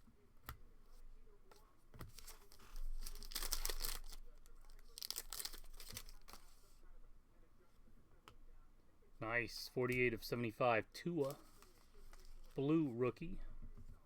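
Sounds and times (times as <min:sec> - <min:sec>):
packaging tearing rustles: 0:02.2 - 0:06.5.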